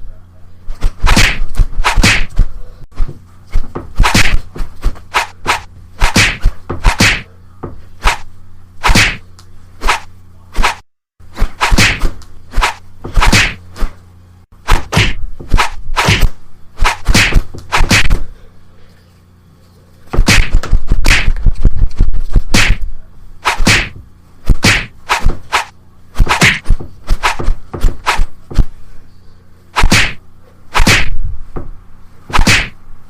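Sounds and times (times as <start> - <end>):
sharp swishing whacks: 0.8 - 7.3, 8.0 - 9.2, 9.8 - 14.0, 14.6 - 18.2, 20.1 - 22.8, 23.4 - 28.7, 29.8 - 31.2, 32.3 - 32.8.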